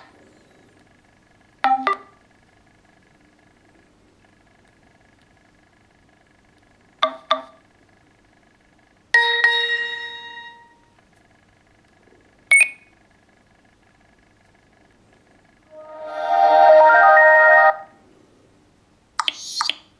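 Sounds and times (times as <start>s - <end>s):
bell-like phone chime: 9.2s - 10.8s.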